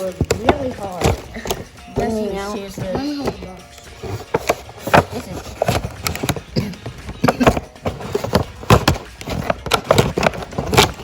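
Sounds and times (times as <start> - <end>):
packaging crinkling and clicking: 3.7 - 11.0.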